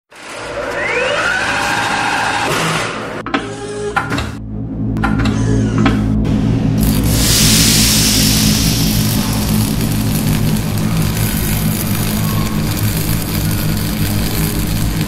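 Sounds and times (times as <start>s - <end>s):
low drone: 4.1s - 15.0s
loud whoosh: 4.4s - 15.0s.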